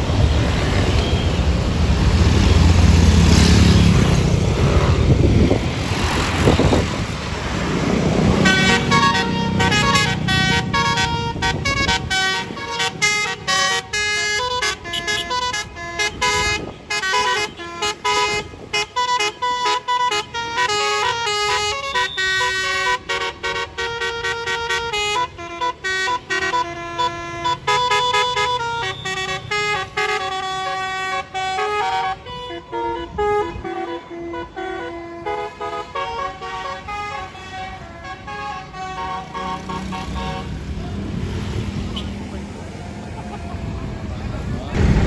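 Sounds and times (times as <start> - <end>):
musical air horn tune: 8.4 - 26.9.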